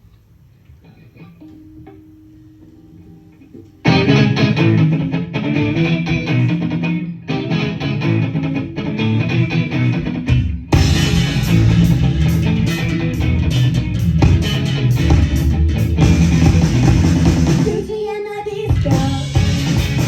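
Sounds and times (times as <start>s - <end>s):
electric guitar and bass: 0.9s - 17.8s, 18.8s - 20.0s
low band hit: 10.7s - 17.8s.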